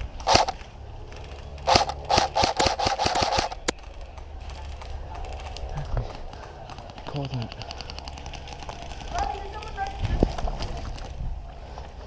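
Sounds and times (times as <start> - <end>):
airsoft gun firing: 0.2 - 0.6, 1.7 - 3.7.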